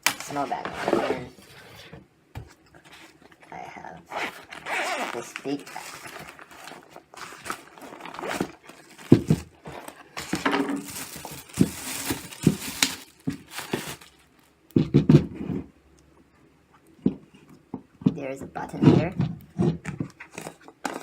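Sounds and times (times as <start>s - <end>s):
packaging crinkling and rustling: 2.7s - 14.6s, 20.0s - 21.0s.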